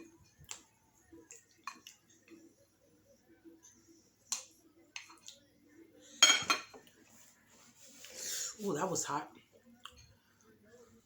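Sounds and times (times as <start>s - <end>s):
person chewing food: 0.0s - 2.4s.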